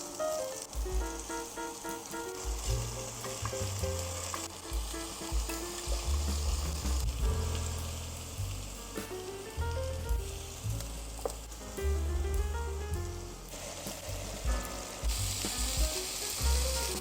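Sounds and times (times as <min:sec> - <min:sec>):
background music: 0:00.0 - 0:17.0
food sizzling in a pan: 0:15.0 - 0:17.0.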